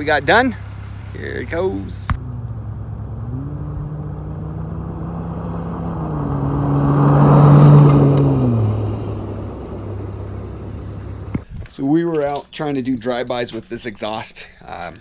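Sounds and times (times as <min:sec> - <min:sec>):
car engine accelerating past: 0:00.0 - 0:11.4.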